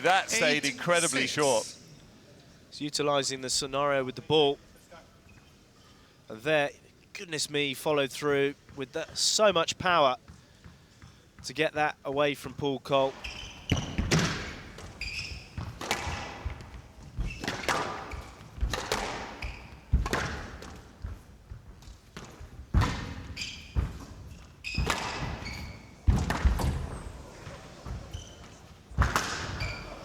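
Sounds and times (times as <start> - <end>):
shoes squeaking on court floor: 0.0 - 1.9, 5.2 - 5.8, 13.0 - 19.9, 21.8 - 30.0.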